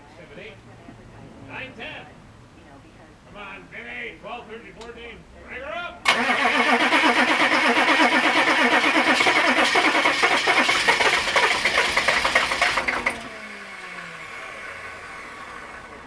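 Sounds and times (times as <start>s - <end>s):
diesel engine cranking on starter: 6.0s - 16.0s.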